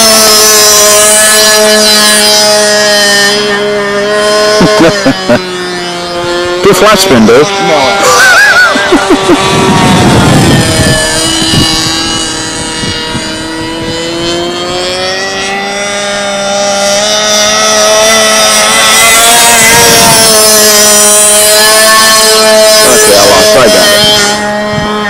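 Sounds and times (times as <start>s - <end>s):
model plane engine: 0.0s - 25.0s
wind buffeting microphone: 8.8s - 25.0s.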